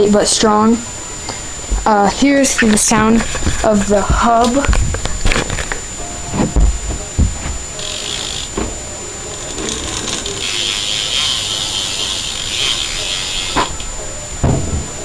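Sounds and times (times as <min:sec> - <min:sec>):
bicycle hub freewheeling clicks: 0:07.8 - 0:08.6, 0:09.3 - 0:13.9
knocks: 0:14.4 - 0:15.0.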